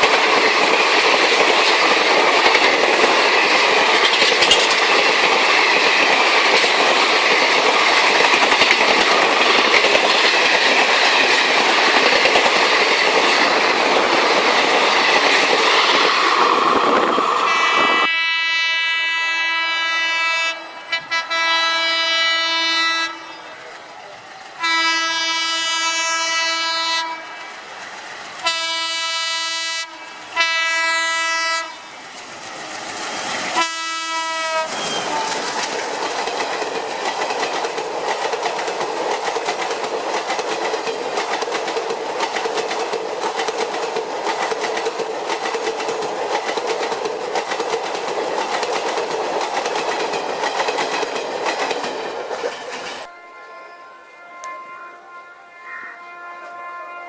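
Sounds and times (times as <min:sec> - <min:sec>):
wheels clacking over rail joints: 0:00.0 - 0:17.5, 0:31.8 - 0:53.1
train rumbling on track: 0:00.0 - 0:57.0
train horn blasts: 0:17.4 - 0:23.6, 0:24.6 - 0:27.4, 0:28.4 - 0:32.0, 0:33.5 - 0:35.5, 0:53.0 - 0:57.0.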